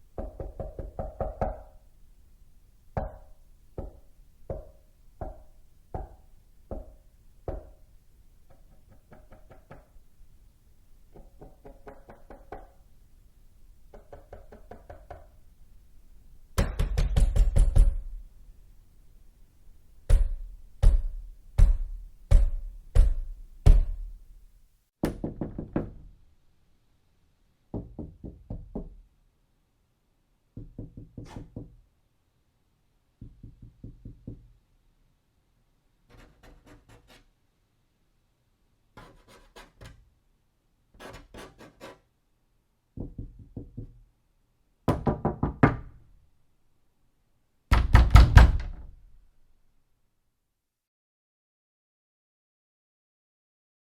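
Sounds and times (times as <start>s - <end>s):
heavy knocks on door: 16.6s - 18.1s, 25.0s - 26.1s, 44.9s - 46.0s, 47.7s - 48.9s.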